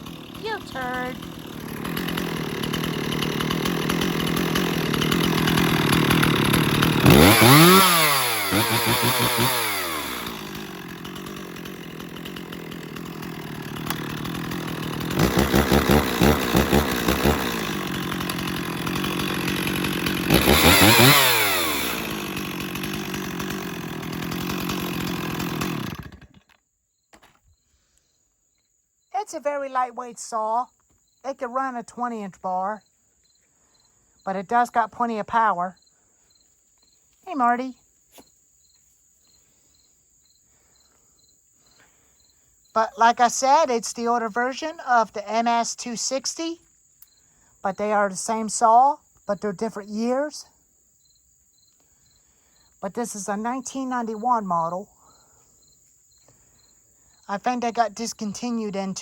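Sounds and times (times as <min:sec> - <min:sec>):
chainsaw engine revving: 0:00.0 - 0:26.6.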